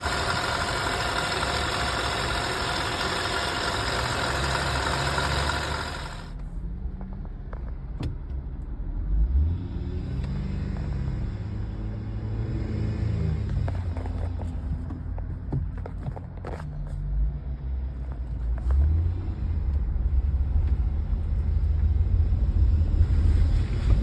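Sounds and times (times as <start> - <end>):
hissing whining noise: 0.0 - 6.3
car engine humming: 0.0 - 6.6.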